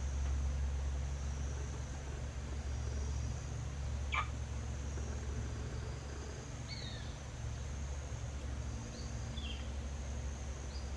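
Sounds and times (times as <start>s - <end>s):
steady low hum: 0.0s - 10.9s
baby monkey hiccuping: 4.1s - 4.3s.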